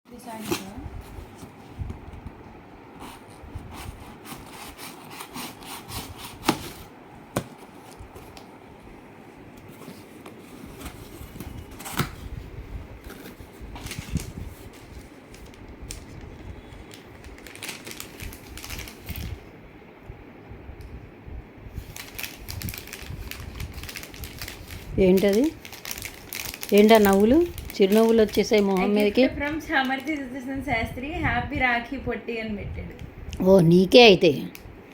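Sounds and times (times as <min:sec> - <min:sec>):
packaging rustling and scraping: 0:00.2 - 0:01.9, 0:03.0 - 0:08.6, 0:09.6 - 0:19.4, 0:21.8 - 0:30.4.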